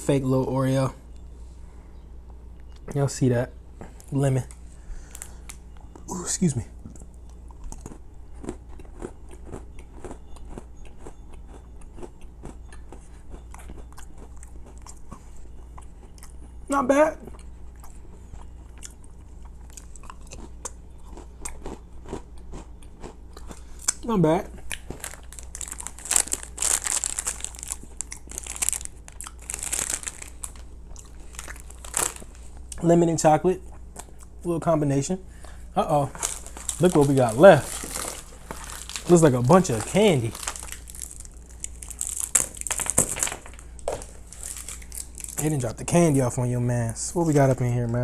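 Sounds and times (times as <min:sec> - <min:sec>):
person chewing crunchy cookie: 0:03.8 - 0:06.1, 0:06.8 - 0:34.5, 0:35.2 - 0:46.2
plastic wrapper crinkling: 0:05.0 - 0:05.6, 0:24.6 - 0:32.9, 0:35.4 - 0:46.2.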